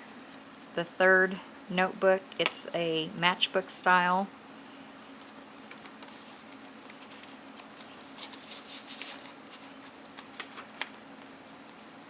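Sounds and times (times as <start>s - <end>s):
low steady hum: 0.0s - 12.0s
paper pages rustling: 5.2s - 12.0s.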